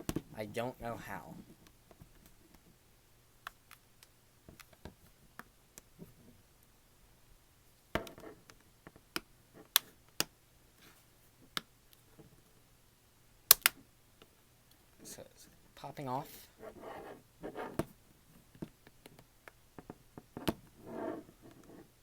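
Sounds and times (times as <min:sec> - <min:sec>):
plastic clips snapping: 0:13.5 - 0:13.8.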